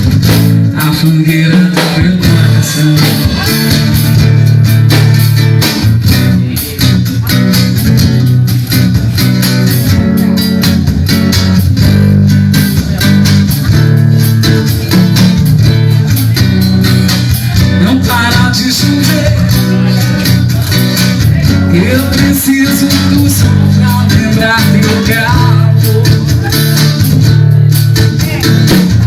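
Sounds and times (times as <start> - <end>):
guitars over bass with steady beat: 0.0 - 29.0.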